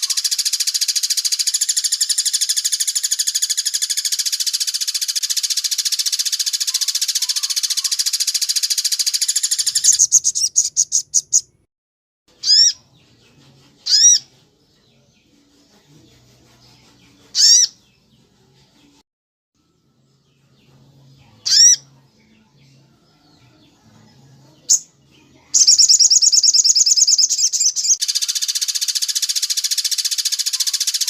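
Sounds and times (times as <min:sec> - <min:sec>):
arched ringing bird calls: 0:00.0 - 0:11.6, 0:12.3 - 0:15.3, 0:16.8 - 0:18.1, 0:19.7 - 0:31.0
high bird trill: 0:00.0 - 0:11.7, 0:12.3 - 0:13.0, 0:13.8 - 0:14.3, 0:17.3 - 0:17.9, 0:21.4 - 0:21.9, 0:24.7 - 0:31.0.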